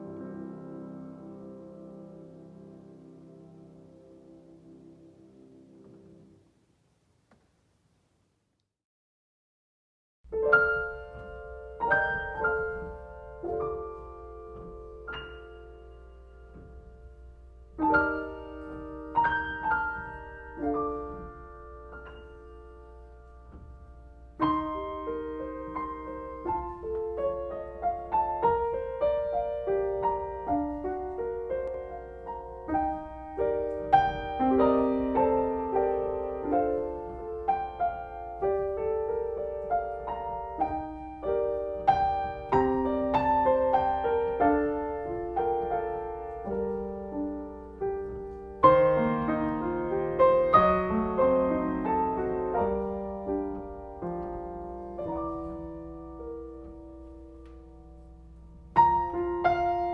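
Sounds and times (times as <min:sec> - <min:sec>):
solo piano carol: 0:00.0 - 0:07.3, 0:10.3 - 0:59.9.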